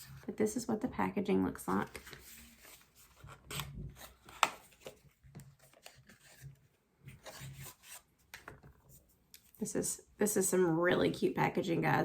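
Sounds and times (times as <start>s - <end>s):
hands rubbing and rustling packaging: 1.7s - 9.6s.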